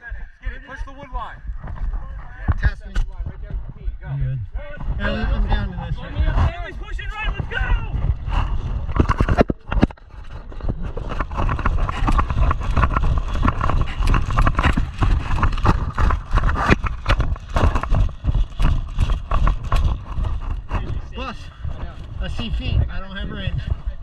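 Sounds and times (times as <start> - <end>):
running footsteps thudding: 6.0 - 24.0.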